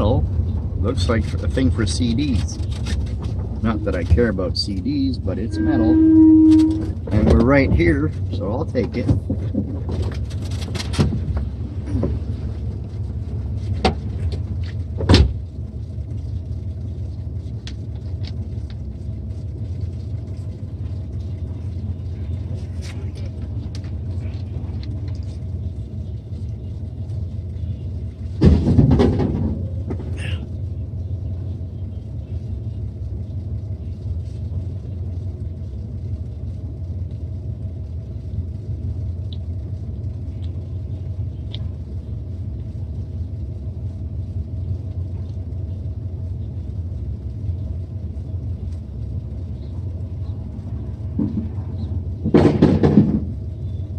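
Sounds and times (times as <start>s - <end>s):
truck engine rumbling: 0.0s - 53.9s
clattering knock: 52.2s - 53.4s.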